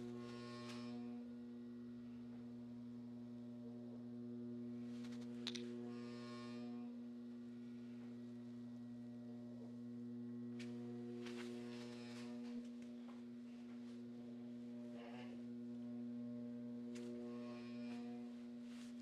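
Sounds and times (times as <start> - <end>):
steady electrical hum: 0.0 - 19.0
rustling and scraping: 16.9 - 19.0.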